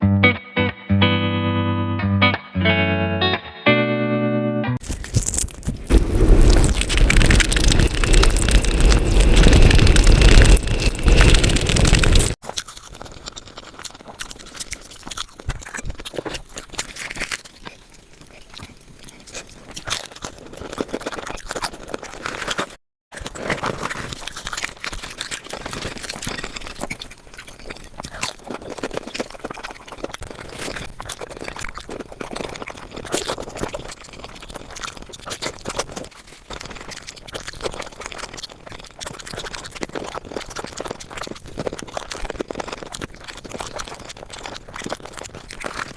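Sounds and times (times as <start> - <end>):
loud noisy sound: 4.8 - 12.4
person chewing and crunching food: 4.8 - 22.7, 23.9 - 45.9.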